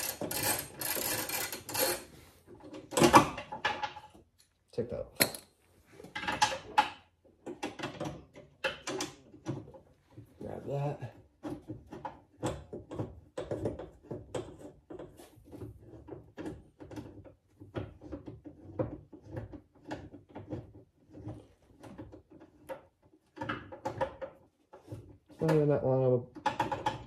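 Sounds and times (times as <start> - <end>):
car parts clicking and knocking: 5.2 - 10.3, 11.2 - 25.6, 26.3 - 27.0.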